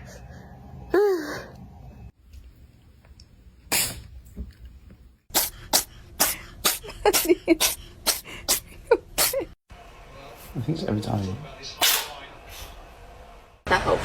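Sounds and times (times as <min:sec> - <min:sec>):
cat sneezing: 0:03.7 - 0:04.0, 0:05.3 - 0:09.6.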